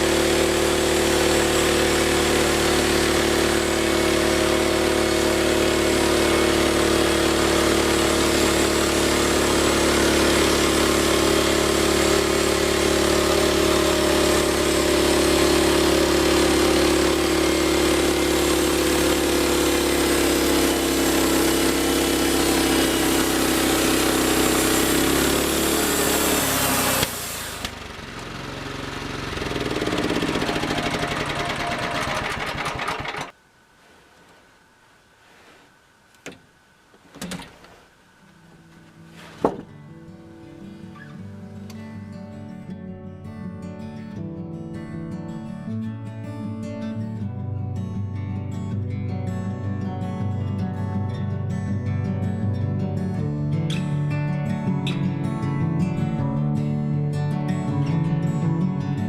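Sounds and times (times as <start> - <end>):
band sawmill running: 0.0 - 33.4.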